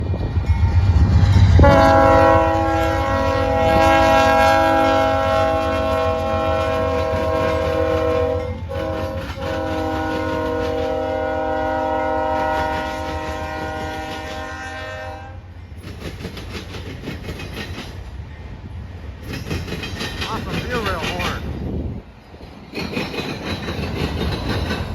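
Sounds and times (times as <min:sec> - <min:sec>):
low rumble of passing train: 0:00.0 - 0:24.9
locomotive air horn blasts: 0:01.6 - 0:15.4
wheels clattering over rail joints: 0:07.0 - 0:11.0, 0:15.7 - 0:18.2, 0:19.2 - 0:24.9.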